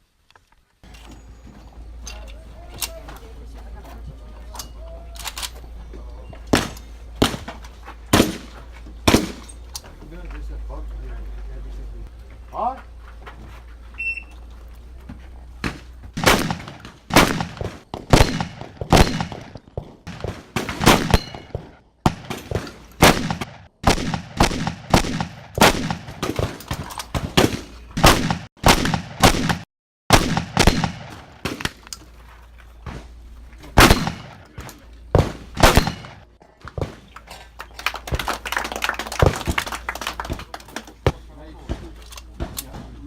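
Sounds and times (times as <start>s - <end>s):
shotgun shots: 6.5s - 9.5s, 15.6s - 31.8s, 33.8s - 34.5s, 35.1s - 37.1s.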